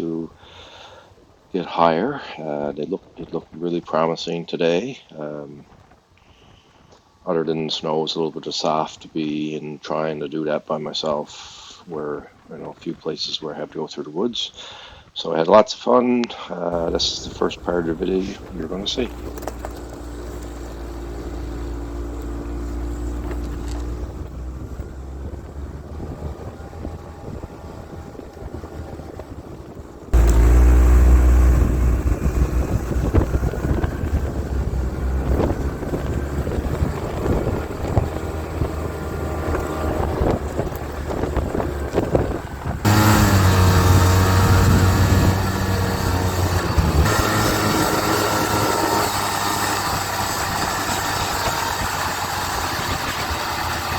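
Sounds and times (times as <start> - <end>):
snowmobile engine running: 16.7 - 53.9.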